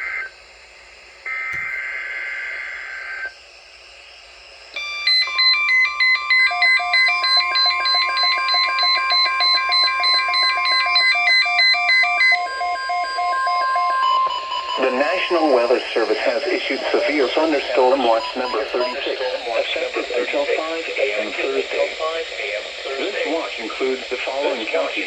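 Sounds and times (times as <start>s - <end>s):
pulsing electronic alarm beeps: 1.3s - 3.3s, 4.8s - 20.4s
steady attention tone: 12.4s - 25.0s.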